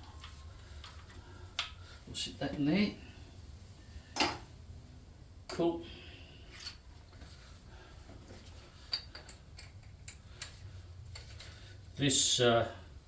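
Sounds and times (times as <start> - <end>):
low steady hum: 0.0 - 13.0
tools clicking and tapping: 8.9 - 11.5.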